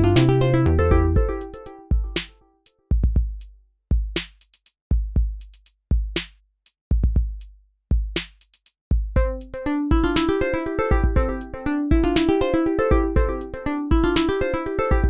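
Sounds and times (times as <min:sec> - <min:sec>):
synth melody: 0:00.0 - 0:02.2
drum machine beat: 0:00.0 - 0:15.0.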